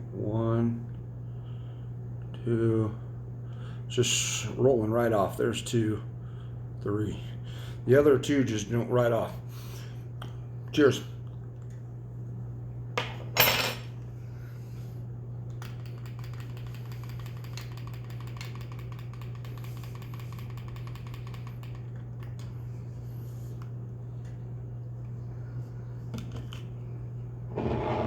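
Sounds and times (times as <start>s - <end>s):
objects clattering on a tabletop: 13.0s - 13.9s.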